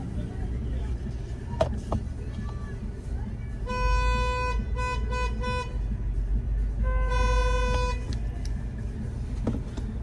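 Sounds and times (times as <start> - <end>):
street traffic rumble: 0.0 - 10.0
vehicle horn honking: 3.6 - 5.8, 6.8 - 8.1.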